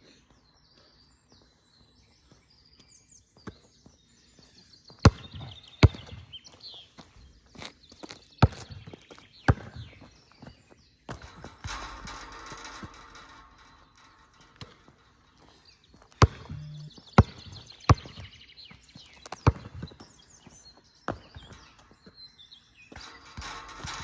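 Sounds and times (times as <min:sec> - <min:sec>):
basketball bouncing on hard surface: 0:05.1 - 0:06.3, 0:08.4 - 0:10.1, 0:11.1 - 0:13.4, 0:14.4 - 0:18.3, 0:19.2 - 0:20.1.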